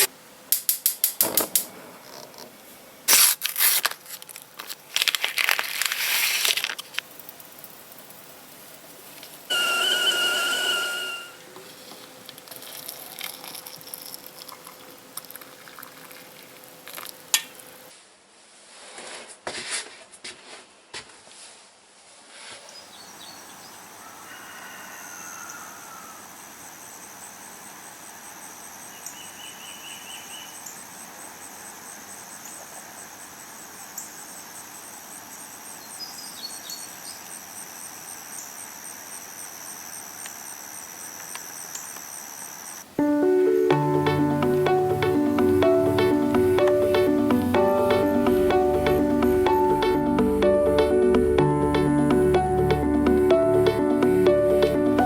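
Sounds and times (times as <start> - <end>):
insects trilling: 6.8 - 11.4, 23.0 - 43.0
bird chirps: 28.9 - 30.8.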